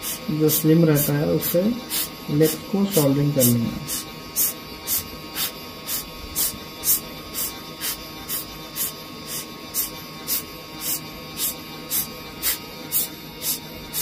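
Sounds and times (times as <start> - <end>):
music with hiss-like beat: 0.0 - 14.0.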